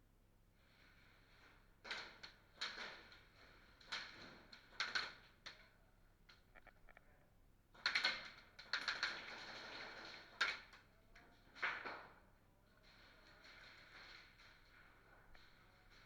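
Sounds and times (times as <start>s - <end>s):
sharp clicks and rattles: 6.2s - 7.2s.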